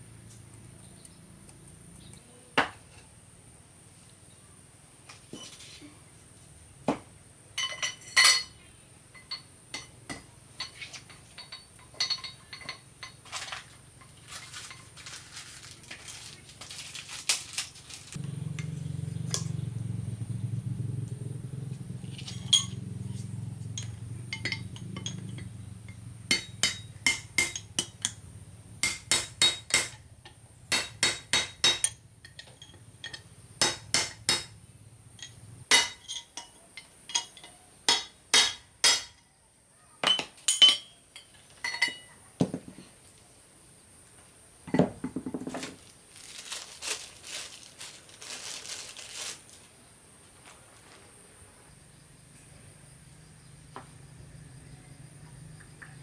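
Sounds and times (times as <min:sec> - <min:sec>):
metal tools tapping on metal: 0:07.6 - 0:15.0, 0:18.5 - 0:19.6, 0:22.1 - 0:23.0, 0:23.6 - 0:28.2, 0:28.8 - 0:34.6, 0:35.2 - 0:39.2, 0:40.1 - 0:42.2.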